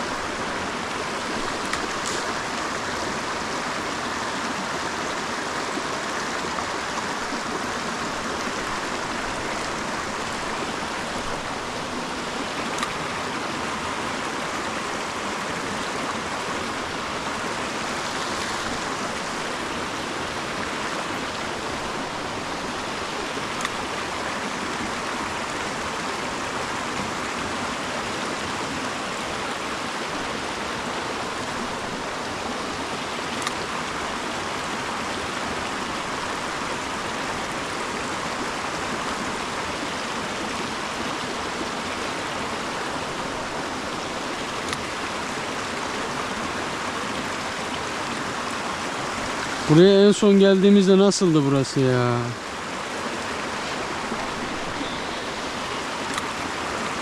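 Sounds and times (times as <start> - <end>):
stream water over rocks: 0.0 - 57.0
faint clicks: 23.6 - 23.8, 44.6 - 44.9.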